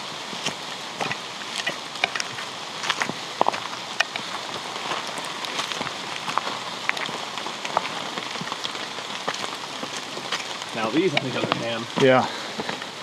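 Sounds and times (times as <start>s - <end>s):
rain drop hits: 0.0s - 13.0s
steady rain falling: 0.0s - 13.0s.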